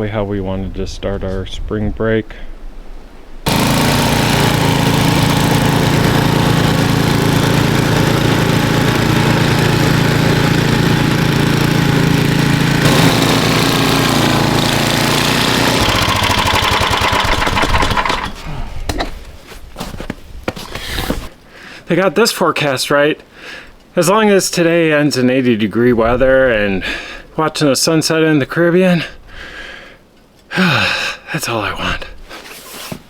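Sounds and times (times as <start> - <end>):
petrol engine running: 3.5 - 18.4.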